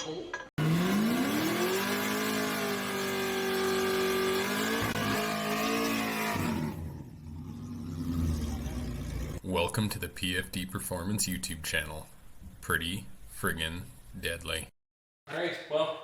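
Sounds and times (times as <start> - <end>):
car engine revving: 0.6 - 9.4.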